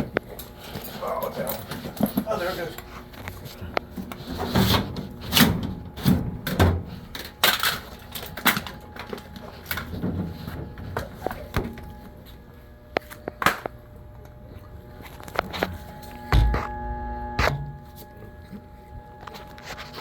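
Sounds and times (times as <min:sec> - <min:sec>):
faint steady hum: 0:00.0 - 0:20.0
knocks and thumps: 0:16.3 - 0:17.8.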